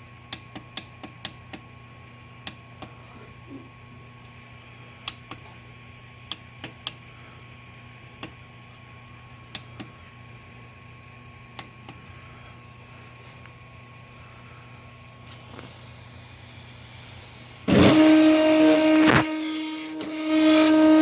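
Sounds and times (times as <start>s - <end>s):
electrical hum: 0.0s - 21.0s
thin high whine: 15.3s - 21.0s.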